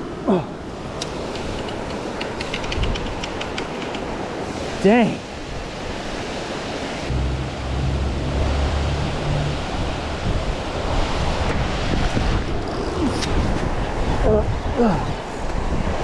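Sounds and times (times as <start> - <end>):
waterfall rushing: 6.6 - 11.9
wind buffeting microphone: 7.0 - 16.0.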